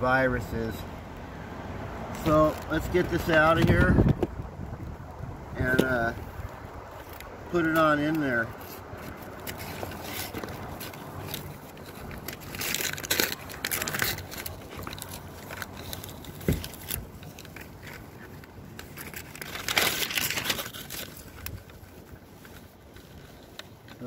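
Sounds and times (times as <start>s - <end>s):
plastic wrapping crinkling: 6.4s - 24.0s.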